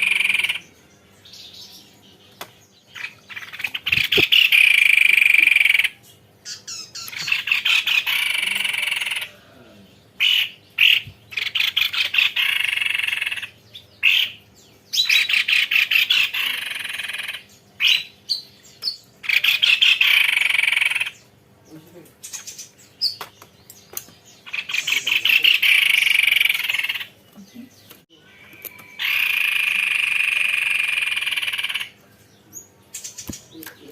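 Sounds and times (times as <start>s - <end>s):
bird singing rolling trills: 0.0s - 33.9s.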